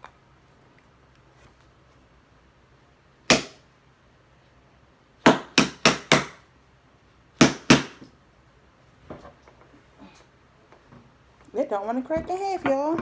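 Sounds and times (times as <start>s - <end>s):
hard knocks on plastic toy: 3.3s - 3.6s, 5.3s - 6.4s, 7.4s - 8.1s.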